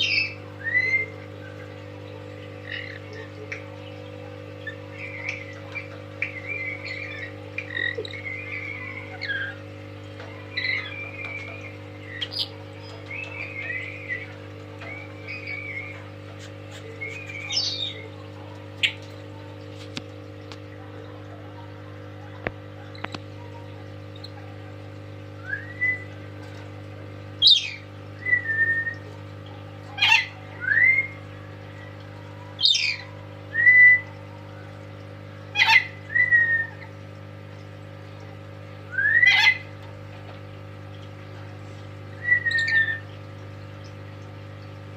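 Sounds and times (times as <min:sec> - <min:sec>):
steady low hum: 0:00.0 - 0:44.9
parrot chattering: 0:30.0 - 0:30.4, 0:35.5 - 0:36.0, 0:39.2 - 0:39.7.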